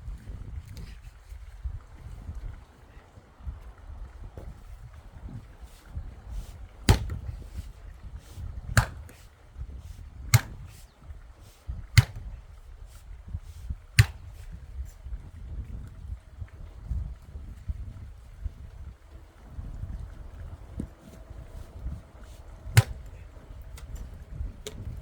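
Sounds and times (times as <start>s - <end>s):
axe splitting firewood: 6.3s - 11.0s, 11.9s - 12.9s, 13.5s - 14.6s, 20.8s - 25.0s.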